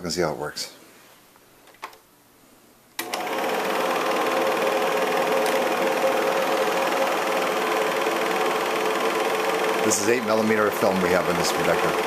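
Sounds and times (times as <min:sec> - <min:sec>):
projector switch click: 0:03.0 - 0:03.2, 0:05.4 - 0:05.7
film projector running: 0:03.0 - 0:12.0.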